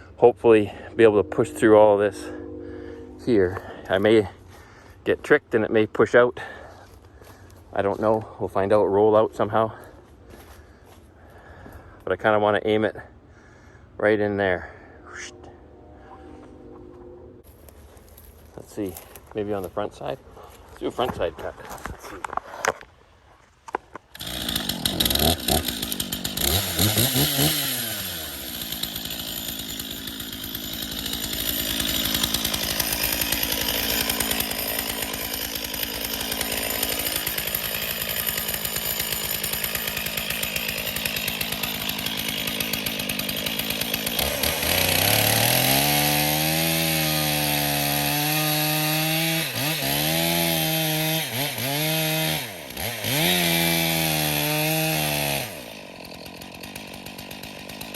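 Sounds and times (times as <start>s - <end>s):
chainsaw cutting wood: 23.9s - 57.9s.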